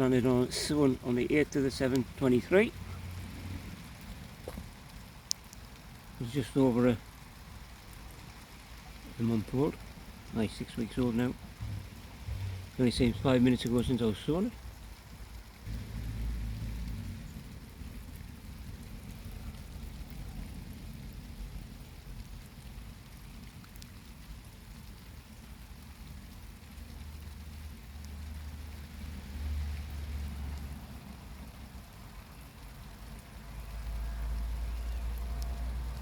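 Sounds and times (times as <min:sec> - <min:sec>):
light rain falling: 0:00.0 - 0:36.0
wind buffeting microphone: 0:11.4 - 0:13.4.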